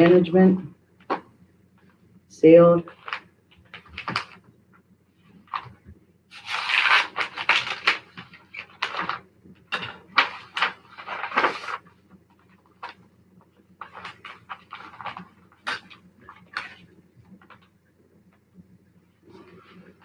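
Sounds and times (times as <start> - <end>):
paper rustling: 2.8 - 4.5, 5.2 - 17.7
paper tearing: 6.3 - 9.2.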